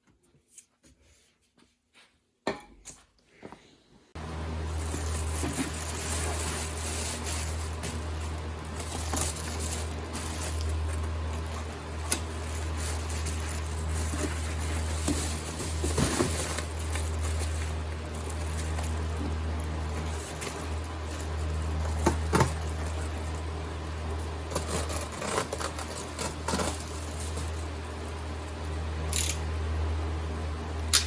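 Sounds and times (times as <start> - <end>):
fan humming: 4.1 - 31.0
clicks and rustles of material: 4.6 - 28.0.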